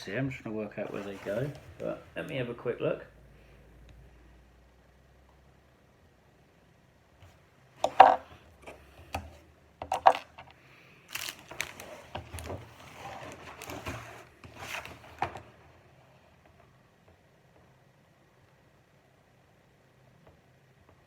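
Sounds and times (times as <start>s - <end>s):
rustling and clattering: 11.1s - 16.8s.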